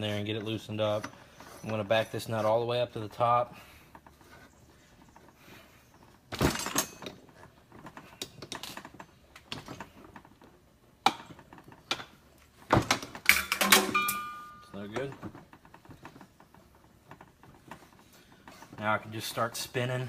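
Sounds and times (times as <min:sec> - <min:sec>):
metal taps and clinks: 0:13.3 - 0:15.2.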